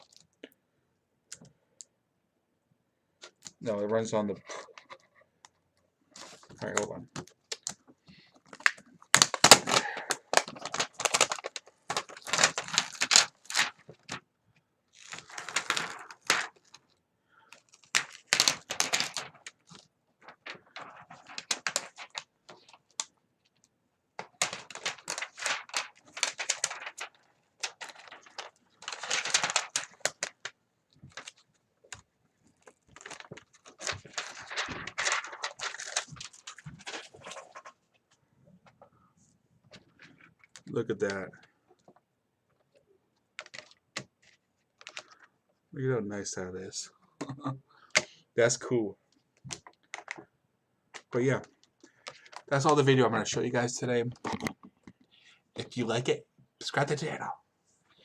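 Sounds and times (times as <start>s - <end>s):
plastic parts clicking and rattling: 6.2s - 14.2s, 15.0s - 37.8s, 43.4s - 45.3s, 47.9s - 48.1s, 49.4s - 50.3s, 50.9s - 52.9s, 54.1s - 55.1s.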